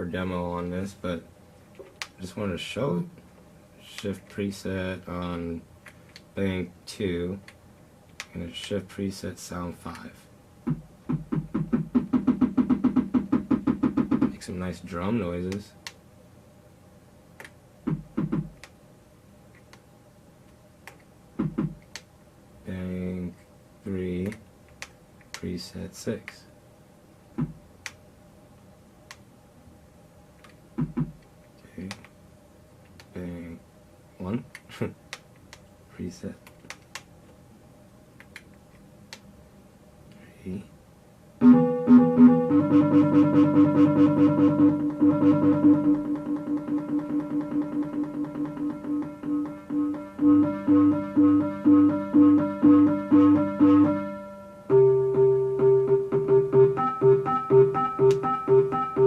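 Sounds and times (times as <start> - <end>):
synthesizer fast note sequence: 41.4 - 59.0
synthesizer held tone: 41.4 - 59.0.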